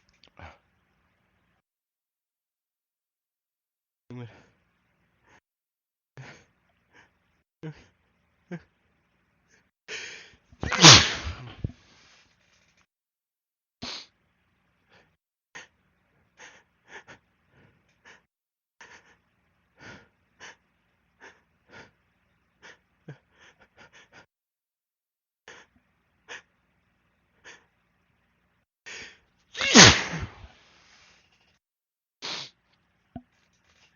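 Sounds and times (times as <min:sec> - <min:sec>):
person catching breath: 0:09.9 - 0:10.4, 0:28.9 - 0:29.2
person sneezing: 0:10.6 - 0:11.7, 0:28.9 - 0:30.5, 0:32.2 - 0:32.6.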